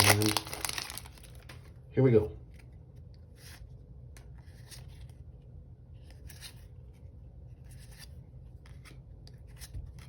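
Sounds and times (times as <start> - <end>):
cards sliding and swishing: 6.0 - 7.0, 7.6 - 10.0.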